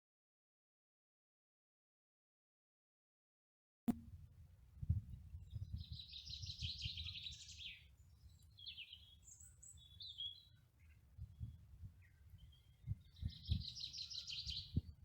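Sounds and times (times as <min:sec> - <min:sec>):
songbirds singing: 0:04.9 - 0:15.0.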